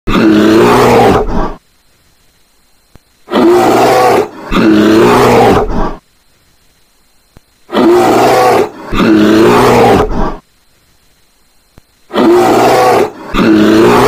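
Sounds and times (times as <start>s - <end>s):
polar bear roaring: 0.1s - 1.6s, 3.3s - 6.0s, 7.7s - 10.4s, 12.1s - 14.0s.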